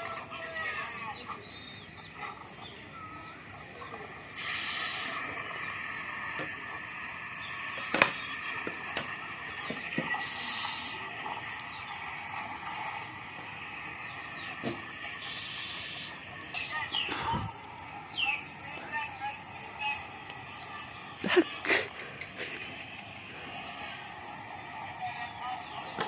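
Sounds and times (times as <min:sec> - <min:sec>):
insects or birds background: 0:00.0 - 0:26.0
high hissing buzz: 0:04.3 - 0:05.4.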